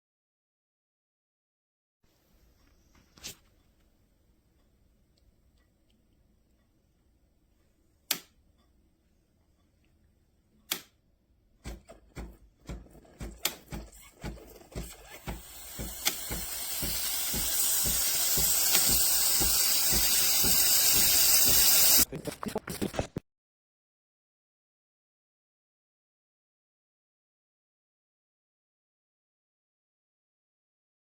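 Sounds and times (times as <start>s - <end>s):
knocks: 11.6s - 22.0s
pump pulsing: 11.6s - 23.2s
steam hissing: 14.8s - 22.1s
espresso machine clicks: 15.2s - 22.0s.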